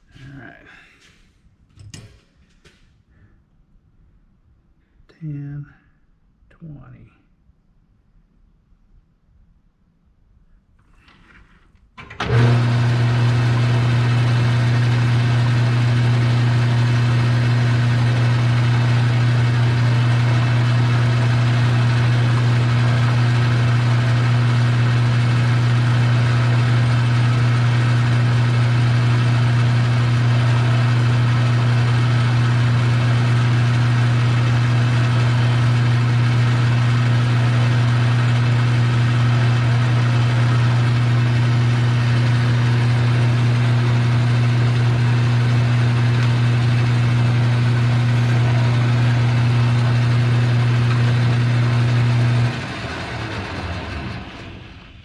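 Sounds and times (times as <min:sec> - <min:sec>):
metal lathe motor humming: 0:12.2 - 0:54.9.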